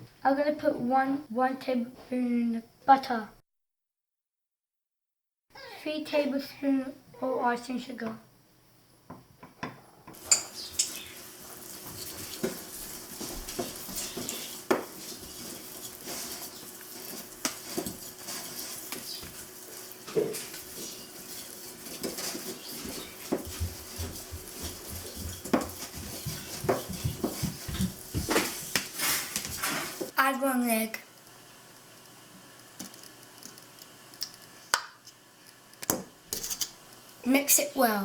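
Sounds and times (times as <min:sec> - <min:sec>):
spoon scraping against bowl: 0:10.2 - 0:11.2, 0:11.8 - 0:27.4, 0:36.4 - 0:36.7.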